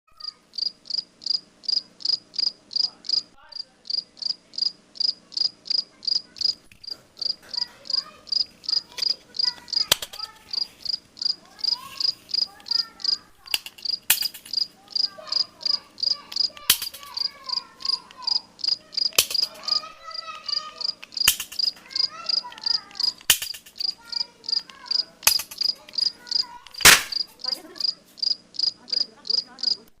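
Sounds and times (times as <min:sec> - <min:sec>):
cricket chirping: 0:00.2 - 0:30.0
toy cap gun pops: 0:09.0 - 0:10.3, 0:13.4 - 0:14.6, 0:16.3 - 0:17.3, 0:19.1 - 0:19.8, 0:21.0 - 0:23.9, 0:24.6 - 0:27.3.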